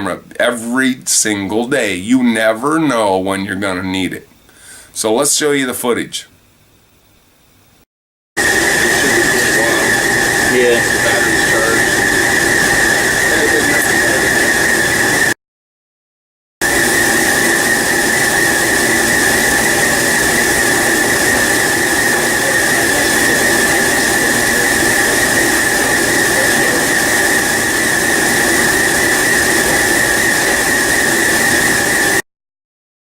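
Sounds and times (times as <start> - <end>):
high machine whine: 0.0 - 15.4, 16.6 - 32.2
factory machinery running: 8.4 - 15.4, 16.6 - 32.2.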